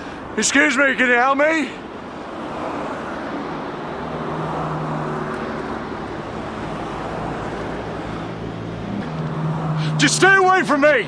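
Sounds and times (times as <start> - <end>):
road noise: 0.0 - 11.0
low engine hum: 2.0 - 10.6.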